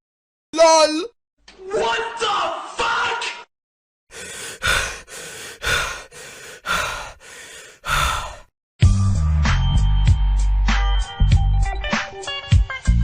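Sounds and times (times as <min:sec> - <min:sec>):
heavy breathing: 0:04.1 - 0:08.5.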